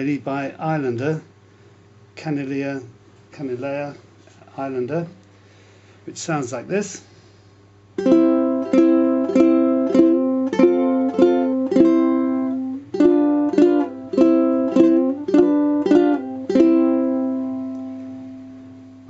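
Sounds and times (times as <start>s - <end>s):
ukulele chords strummed: 8.0s - 19.0s.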